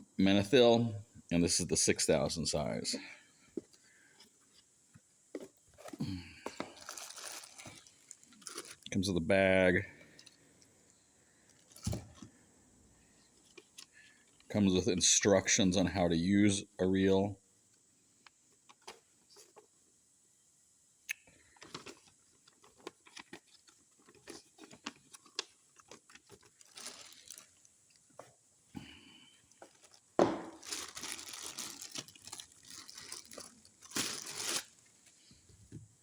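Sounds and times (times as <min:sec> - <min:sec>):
plastic bag crinkling: 0:05.8 - 0:09.1, 0:21.6 - 0:27.8, 0:29.6 - 0:34.9.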